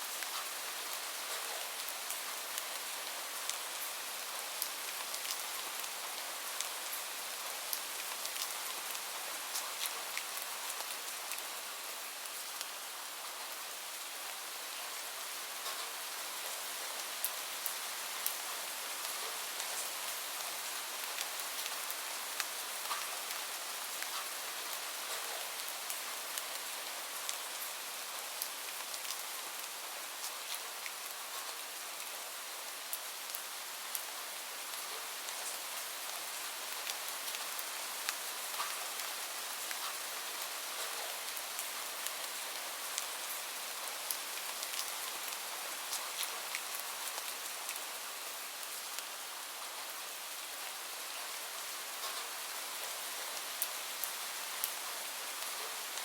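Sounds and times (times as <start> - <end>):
steady rain hiss: 0.0 - 56.0.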